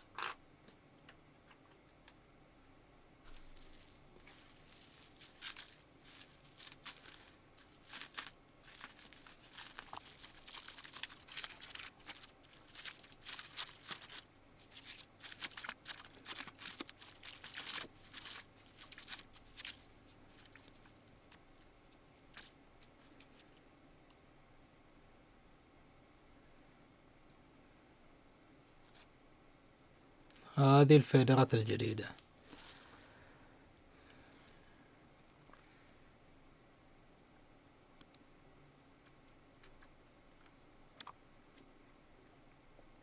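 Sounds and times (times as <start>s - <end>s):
packaging crinkling and tearing: 3.3s - 21.5s, 22.3s - 22.6s.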